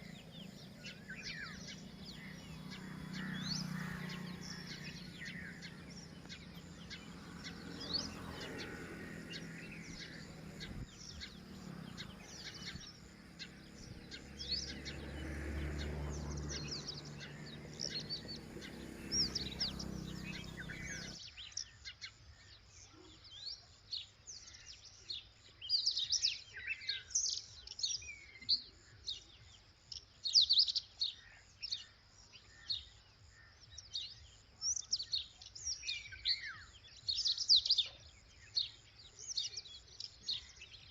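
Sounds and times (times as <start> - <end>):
lapwings chirping: 16.3 - 21.2.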